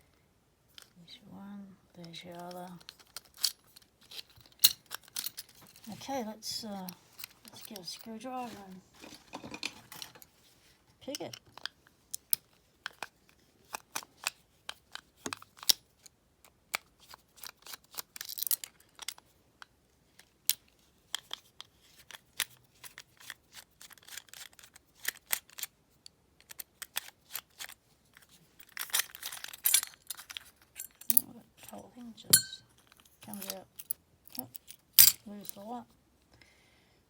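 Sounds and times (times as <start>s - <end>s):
metallic clicks of lock parts: 2.0s - 5.9s, 13.7s - 35.6s.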